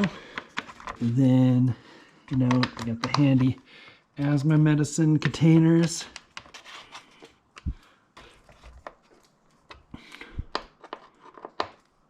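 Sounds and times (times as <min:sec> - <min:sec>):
plastic parts clicking and tapping: 0:00.0 - 0:01.0, 0:02.2 - 0:03.6, 0:05.1 - 0:06.6, 0:07.5 - 0:12.0.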